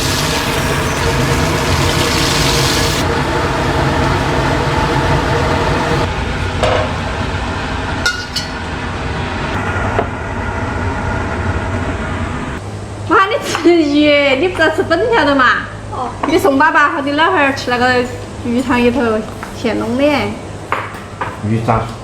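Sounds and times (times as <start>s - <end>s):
hiss: 0.0s - 6.1s
machine hum: 0.0s - 13.1s.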